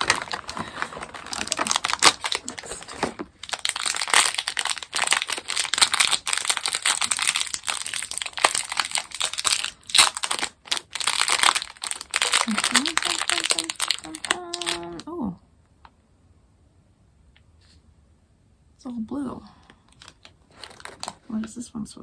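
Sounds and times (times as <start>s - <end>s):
plastic packaging crinkling: 0.0s - 15.0s, 19.9s - 21.4s.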